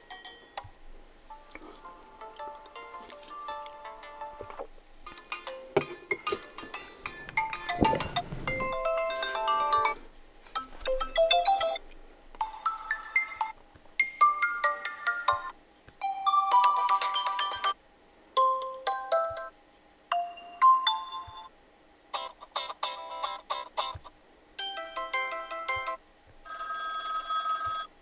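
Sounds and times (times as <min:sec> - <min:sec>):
chiming phone ringtones: 0:26.5 - 0:27.9.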